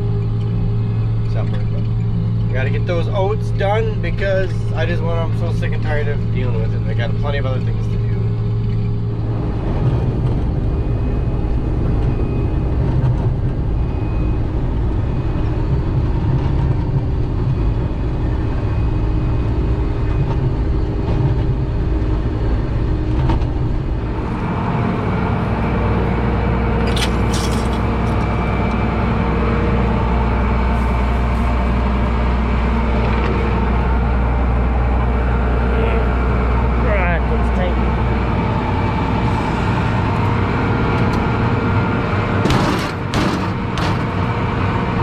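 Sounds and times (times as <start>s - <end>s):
combine harvester engine drone: 0.0s - 45.0s.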